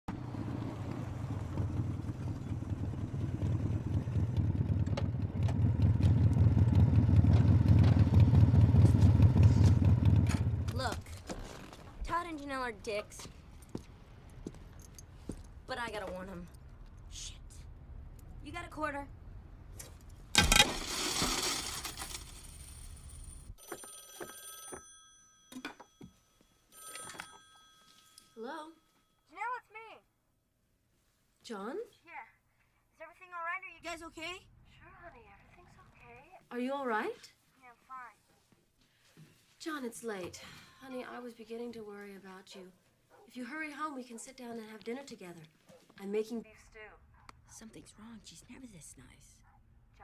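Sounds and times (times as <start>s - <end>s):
small motorcycle engine running: 0.1s - 10.7s.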